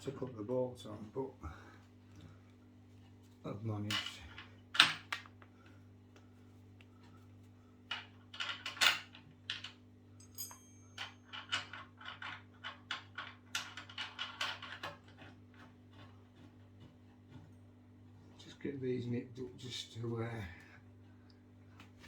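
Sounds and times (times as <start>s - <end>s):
short metallic ring: 10.2s - 11.3s.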